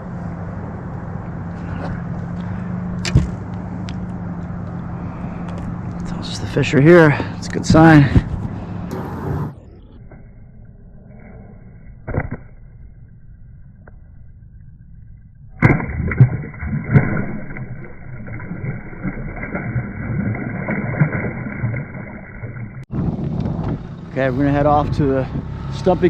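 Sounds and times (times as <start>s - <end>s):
boat motor and wind rushing: 0.0s - 9.6s, 22.8s - 26.0s.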